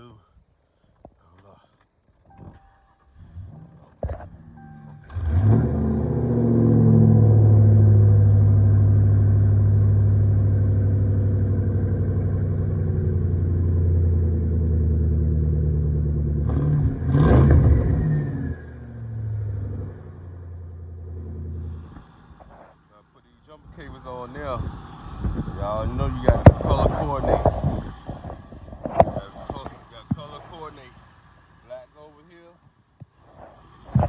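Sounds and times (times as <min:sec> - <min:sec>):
car engine starting and running: 0:02.3 - 0:32.5
car engine revving: 0:03.2 - 0:22.4.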